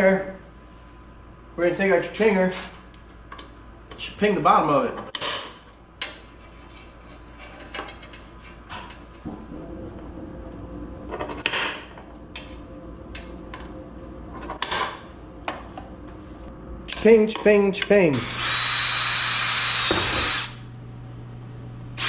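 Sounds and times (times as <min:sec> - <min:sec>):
steady low hum: 0:08.2 - 0:17.2.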